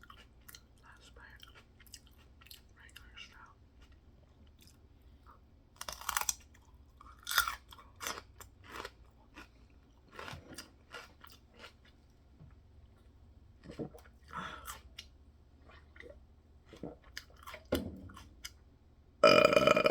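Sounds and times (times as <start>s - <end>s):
open-mouth chewing: 0.0s - 12.2s.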